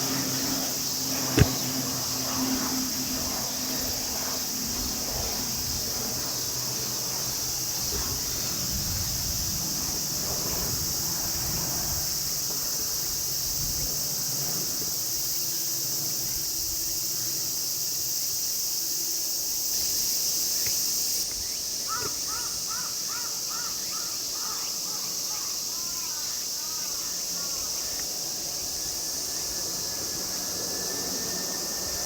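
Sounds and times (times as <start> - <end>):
cicadas droning: 0.0 - 32.0.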